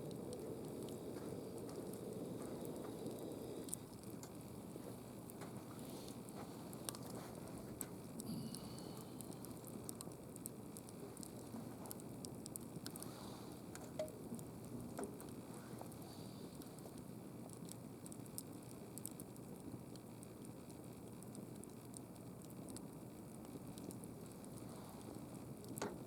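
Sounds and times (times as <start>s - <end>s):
hiss of burning: 0.0s - 14.7s
campfire pops and snaps: 0.0s - 26.0s.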